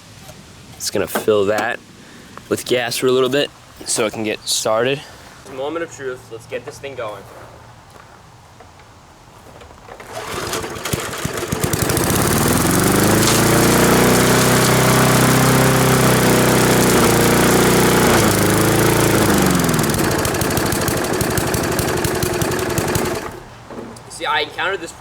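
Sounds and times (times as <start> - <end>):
lawn mower engine revving: 9.9 - 23.6.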